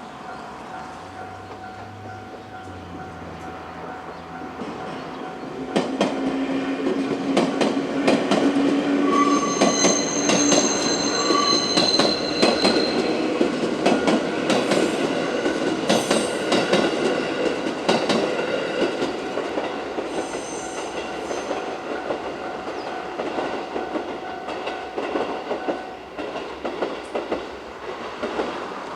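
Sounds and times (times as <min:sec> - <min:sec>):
level crossing warning bell: 0:00.2 - 0:06.1, 0:09.0 - 0:14.5, 0:20.5 - 0:26.0
train wheels clacking over joints: 0:00.7 - 0:28.7
wheel squeals: 0:09.0 - 0:13.2.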